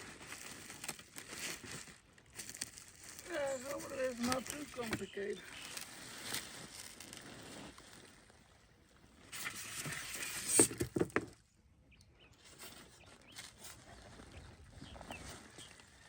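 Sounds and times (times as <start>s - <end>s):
packaging rustling: 0.0s - 7.7s.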